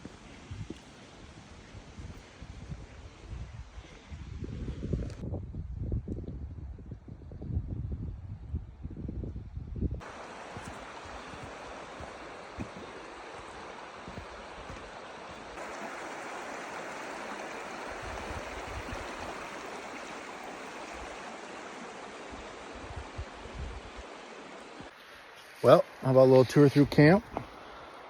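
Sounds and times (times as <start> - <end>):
river flowing over rocks: 10.0 - 24.9.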